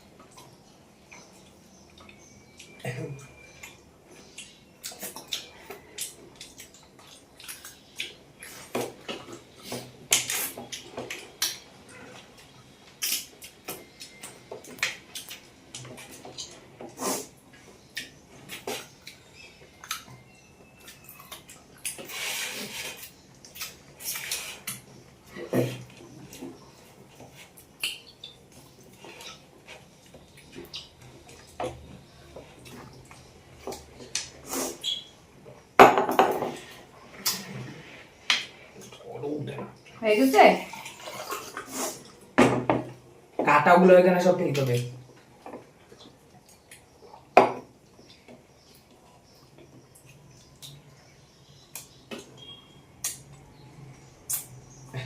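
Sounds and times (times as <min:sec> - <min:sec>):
eating clicks and smacks: 0:27.6 - 0:29.4, 0:53.0 - 0:53.5.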